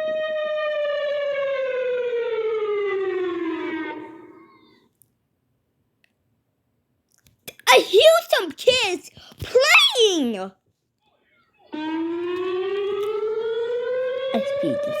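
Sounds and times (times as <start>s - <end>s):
civil defence siren: 0.0s - 4.7s, 11.7s - 15.0s.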